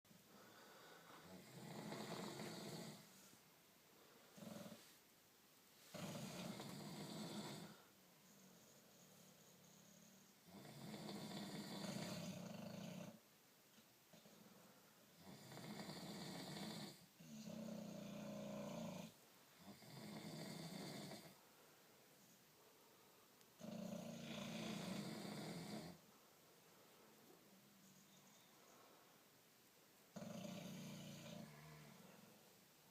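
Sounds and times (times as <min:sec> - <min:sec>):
quiet breathing: 0:00.1 - 0:32.9
person snoring: 0:00.5 - 0:03.1, 0:04.3 - 0:04.9, 0:05.9 - 0:07.9, 0:09.0 - 0:13.2, 0:15.2 - 0:21.4, 0:23.6 - 0:26.0, 0:30.2 - 0:32.2.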